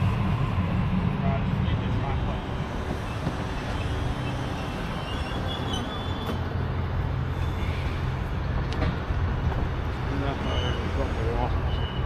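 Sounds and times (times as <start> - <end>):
electric train rumbling: 0.0 - 12.0
faint high squeaks: 3.8 - 6.4.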